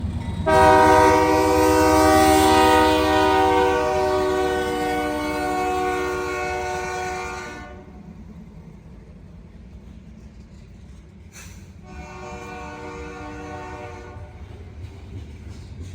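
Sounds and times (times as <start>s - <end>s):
low train rumble: 0.0s - 15.9s
locomotive air horn blast: 0.4s - 8.0s, 11.8s - 14.5s.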